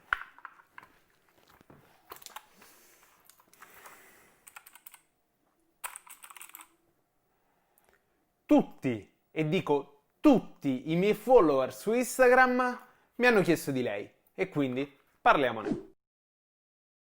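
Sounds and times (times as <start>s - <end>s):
typing on mechanical keyboard: 4.4s - 5.0s, 5.8s - 6.7s.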